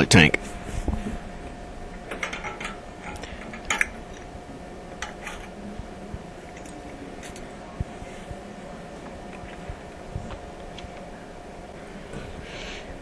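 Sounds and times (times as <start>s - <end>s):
faint steady hum: 0.0s - 13.0s
clicks of hard parts handled: 2.1s - 4.3s.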